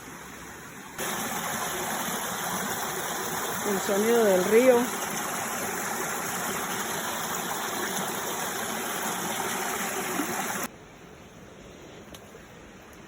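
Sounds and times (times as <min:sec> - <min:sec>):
river water rushing: 0:00.0 - 0:10.7.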